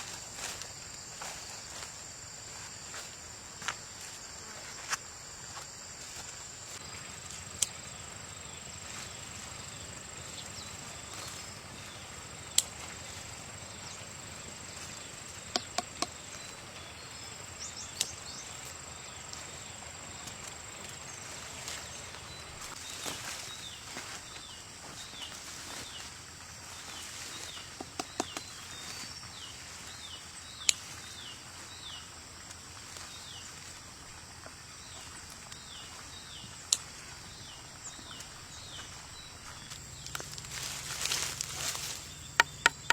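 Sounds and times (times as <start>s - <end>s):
insects chirring: 0.0s - 42.9s
sharp clicks or knocks: 42.4s - 42.9s.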